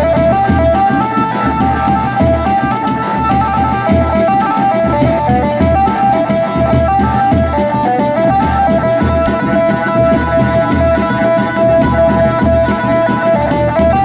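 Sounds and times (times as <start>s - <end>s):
steady thudding drum beat: 0.0s - 14.0s
wedding band playing melody: 0.0s - 14.0s.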